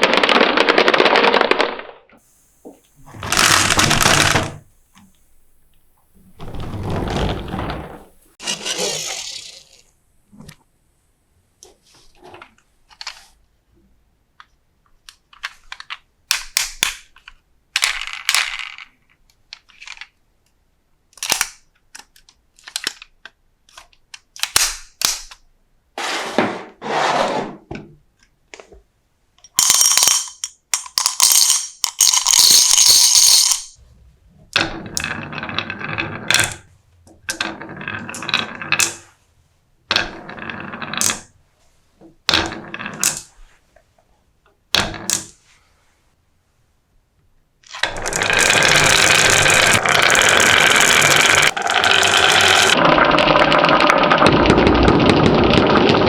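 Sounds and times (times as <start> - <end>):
marbles clacking and rolling: 0.0 - 1.9, 3.2 - 4.6, 29.5 - 33.8, 47.7 - 56.0.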